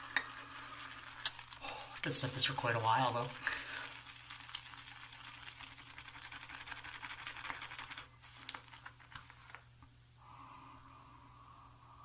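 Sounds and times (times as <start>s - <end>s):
shaving brush swishing lather: 0.6s - 8.5s.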